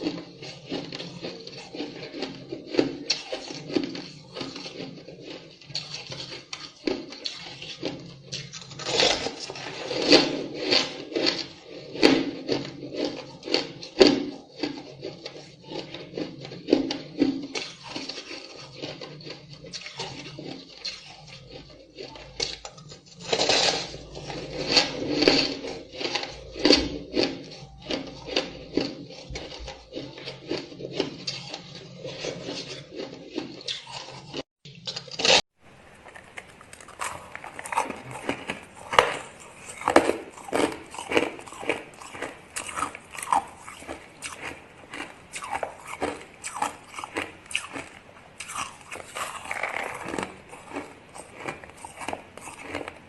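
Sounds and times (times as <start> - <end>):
ice being chewed: 0.0 - 53.0.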